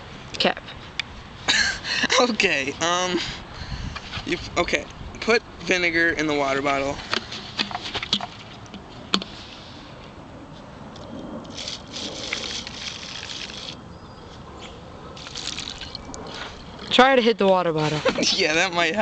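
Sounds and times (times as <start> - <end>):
liquid pouring into bottle: 15.2 - 16.8.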